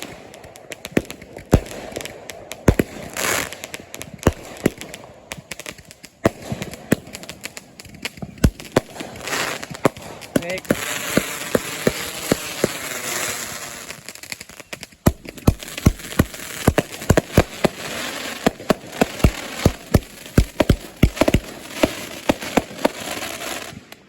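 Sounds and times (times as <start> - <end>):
crackling hiss: 0.0 - 24.0
fireworks sharp bangs: 0.0 - 24.0.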